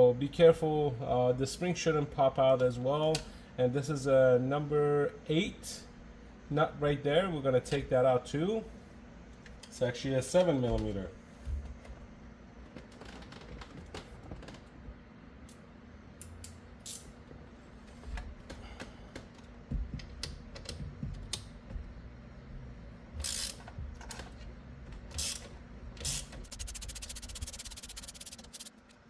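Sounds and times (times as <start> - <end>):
socket ratchet clicking: 23.2 - 23.6, 25.2 - 28.9
parts being handled: 25.0 - 29.0.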